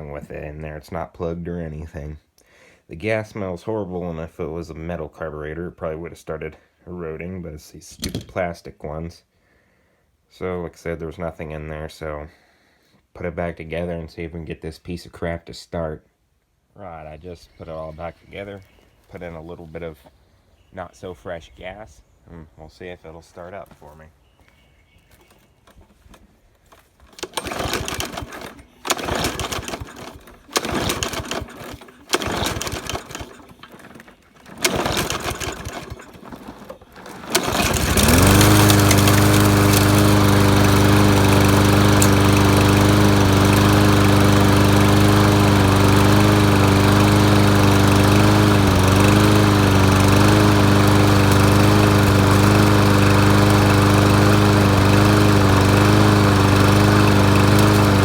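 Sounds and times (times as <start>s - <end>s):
lawnmower engine pull-start cranking: 8.0s - 8.4s, 25.6s - 58.0s
lawnmower engine running: 25.7s - 58.0s.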